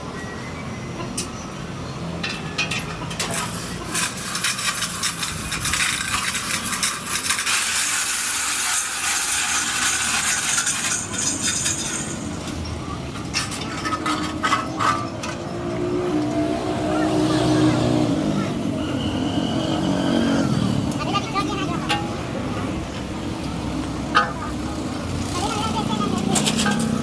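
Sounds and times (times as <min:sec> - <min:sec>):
metal clinks and knocks: 0:02.1 - 0:15.4, 0:26.1 - 0:27.0
metal scraping: 0:02.2 - 0:18.4, 0:19.0 - 0:27.0.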